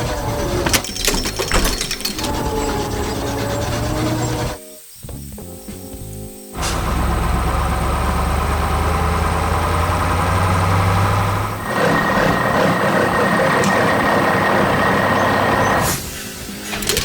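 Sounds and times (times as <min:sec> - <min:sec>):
harsh machine whine: 0:00.0 - 0:04.6, 0:06.6 - 0:17.0
heavy vehicle engine idling: 0:06.6 - 0:16.9.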